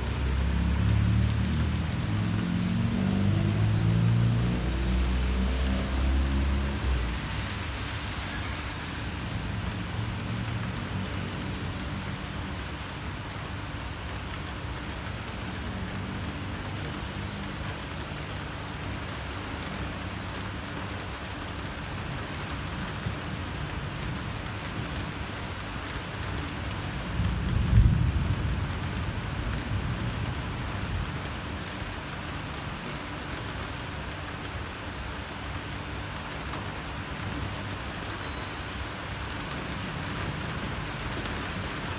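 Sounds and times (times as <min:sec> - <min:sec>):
steady rain: 0:00.0 - 0:41.9
thunder rumble: 0:27.0 - 0:31.2.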